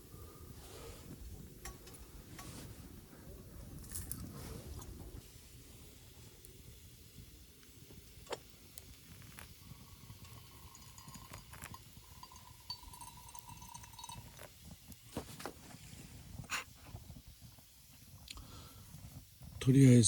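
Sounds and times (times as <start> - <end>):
faint steady tone: 0.0 - 15.2
campfire crackling and popping: 3.6 - 15.1.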